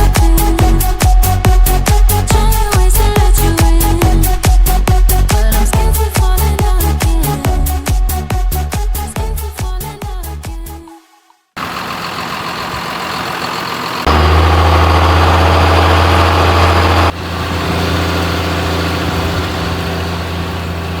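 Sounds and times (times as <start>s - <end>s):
background music: 0.0s - 10.8s
tractor diesel engine running: 11.6s - 21.0s.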